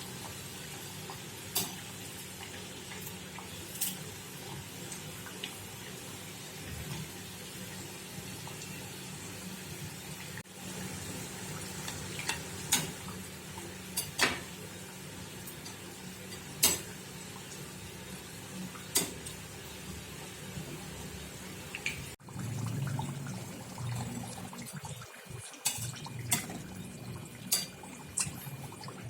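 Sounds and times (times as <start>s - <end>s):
food sizzling in hot oil: 0.0s - 21.7s.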